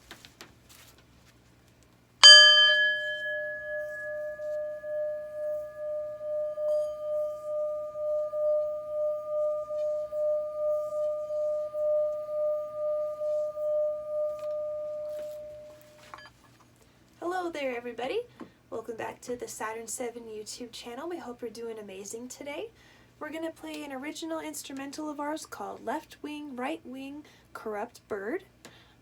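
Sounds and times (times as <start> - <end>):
singing bowl ringing: 2.2 - 16.3.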